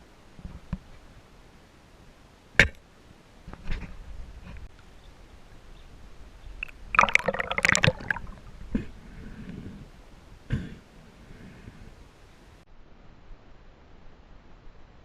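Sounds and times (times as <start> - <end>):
water splashing and bubbling: 6.6 - 8.6.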